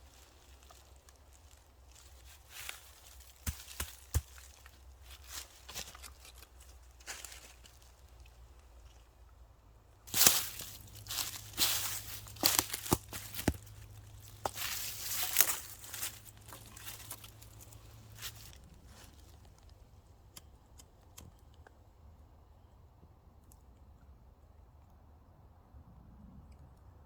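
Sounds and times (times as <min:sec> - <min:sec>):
dry twigs and leaves crunching: 0:00.0 - 0:21.3.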